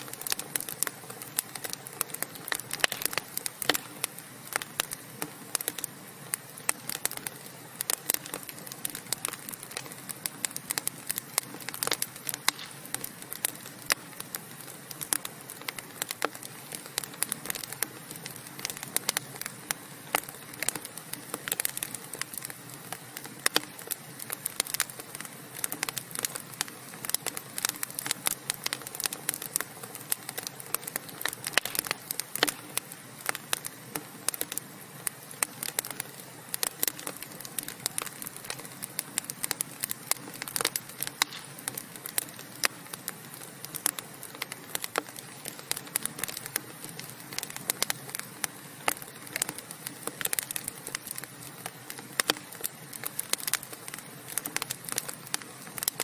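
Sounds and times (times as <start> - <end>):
burning logs crackling and popping: 0.0 - 56.0
steady low hiss: 0.0 - 56.0.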